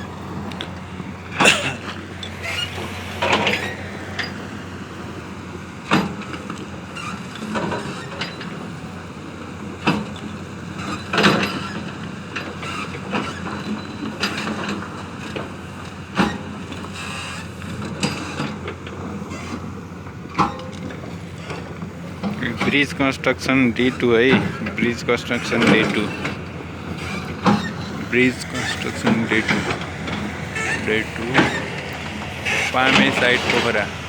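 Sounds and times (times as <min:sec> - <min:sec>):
machinery low hum: 0:22.0 - 0:34.0.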